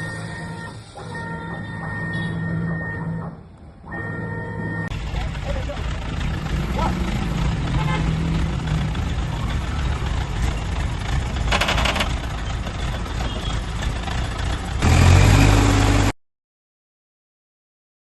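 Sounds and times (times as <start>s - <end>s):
truck engine running: 4.6s - 16.1s.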